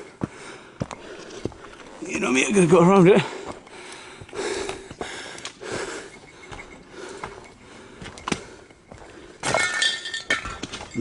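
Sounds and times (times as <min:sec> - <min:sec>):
footsteps crunching over dirt: 0:00.0 - 0:09.6
sharp clinks underfoot: 0:05.4 - 0:11.0.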